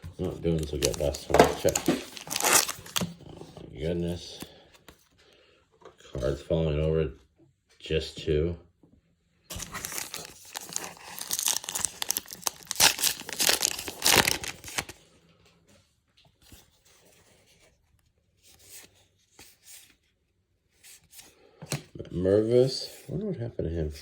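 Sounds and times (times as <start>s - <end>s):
cards rustling: 0.1s - 5.1s, 9.5s - 15.0s
card pack wrapper tearing: 0.3s - 3.2s, 9.5s - 15.0s.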